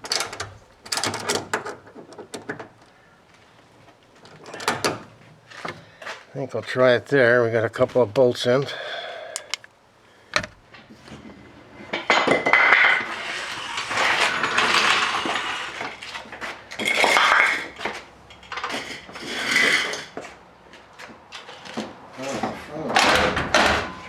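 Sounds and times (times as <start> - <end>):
hand tools clinking on metal bolts: 9.4 - 9.7.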